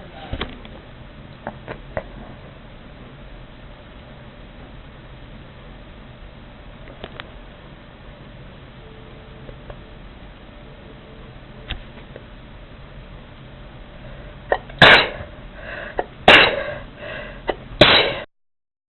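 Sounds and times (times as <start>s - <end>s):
person sneezing: 14.5s - 15.3s, 16.0s - 16.8s, 17.5s - 18.2s
sharp catch of breath: 15.6s - 17.6s.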